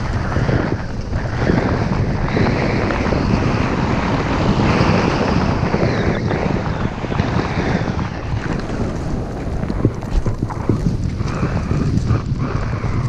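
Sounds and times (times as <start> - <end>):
wind rushing over microphone: 0.0 - 13.0
ski edges scraping on snow: 8.2 - 12.2
skis knocking and clattering: 8.2 - 12.2.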